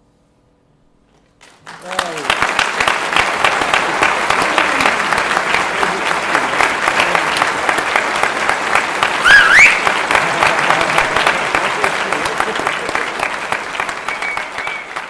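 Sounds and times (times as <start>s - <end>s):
audience applauding: 1.4s - 15.0s
high rising whoop or whistle: 9.2s - 9.8s.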